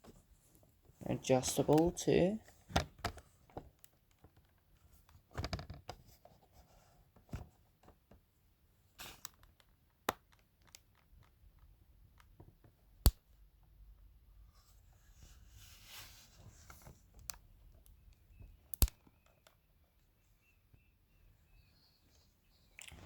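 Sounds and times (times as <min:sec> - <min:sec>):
objects handled with scrapes and rustles: 0:02.4 - 0:07.7, 0:14.5 - 0:17.3.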